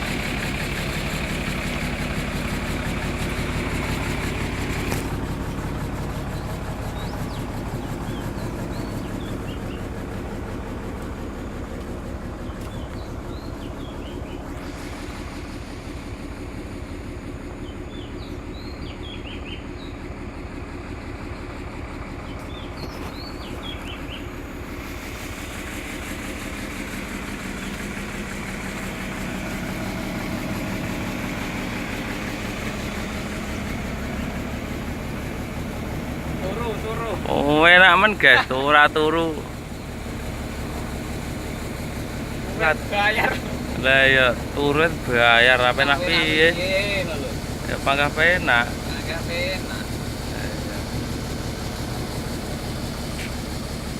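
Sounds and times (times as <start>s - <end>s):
diesel engine idling: 0.0s - 53.9s
high bird chirps: 6.3s - 10.0s, 12.4s - 14.5s, 17.6s - 20.0s, 22.3s - 24.3s.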